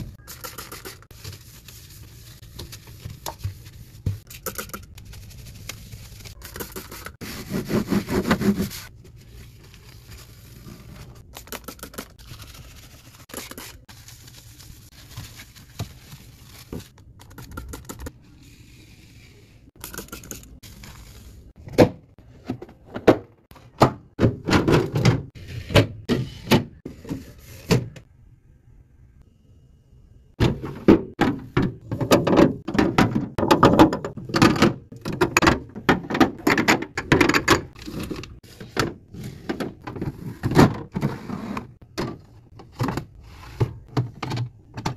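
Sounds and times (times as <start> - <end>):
items thunking and scraping: 21.5 - 28.1, 30.4 - 44.9.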